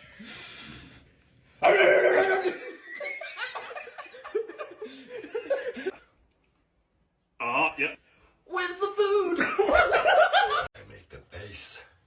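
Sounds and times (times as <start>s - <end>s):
loud vocal outburst: 1.6s - 2.4s.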